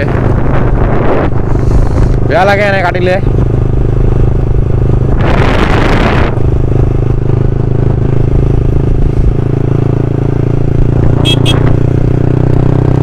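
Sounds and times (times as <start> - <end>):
rush of noise: 0.0 - 3.6, 4.2 - 9.4
motorcycle engine running: 0.0 - 13.0.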